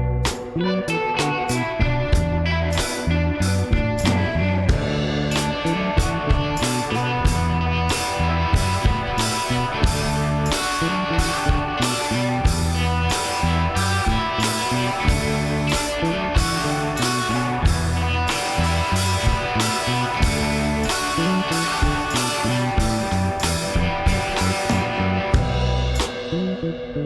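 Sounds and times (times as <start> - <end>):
rock music with guitar and drums: 0.0 - 27.0.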